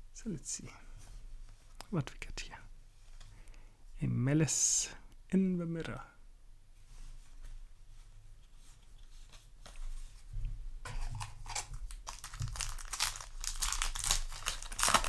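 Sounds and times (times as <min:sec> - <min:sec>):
foil wrapper crinkling: 0:10.9 - 0:15.0.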